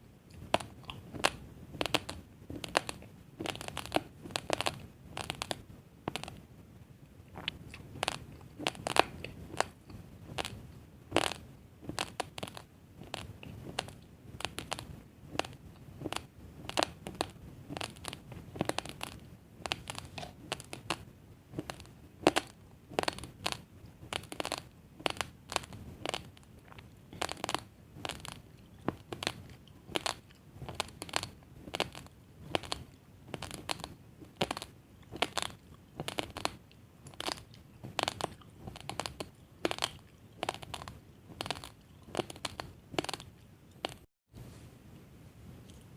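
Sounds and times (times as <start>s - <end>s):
chewing crunchy rice: 0.3s - 5.6s, 21.6s - 44.1s.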